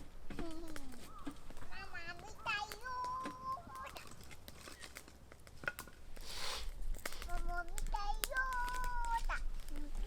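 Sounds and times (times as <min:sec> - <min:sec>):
dry wood crackling: 0:00.0 - 0:10.0
child's voice: 0:00.3 - 0:01.1, 0:01.7 - 0:04.2, 0:07.3 - 0:10.0
hissing rustle: 0:06.0 - 0:10.0.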